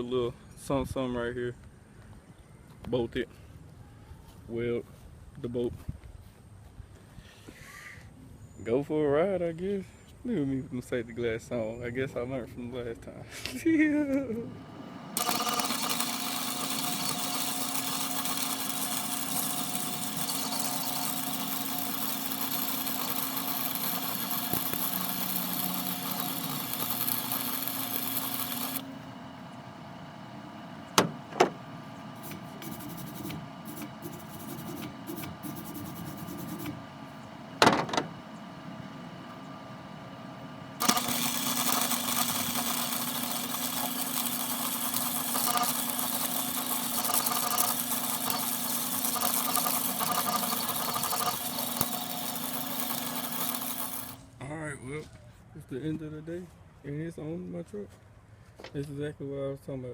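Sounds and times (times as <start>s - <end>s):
engine running steadily: 14.1s - 54.3s
sharp knocks: 37.6s - 38.1s.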